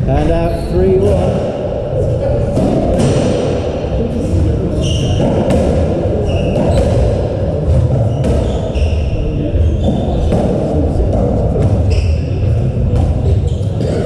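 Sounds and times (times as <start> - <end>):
ball hitting rackets and walls: 0.9 - 4.0, 4.7 - 9.0, 9.8 - 14.0
shoes squeaking on court floor: 4.7 - 5.6, 6.2 - 7.1, 7.7 - 10.4, 11.8 - 12.6, 13.2 - 14.0.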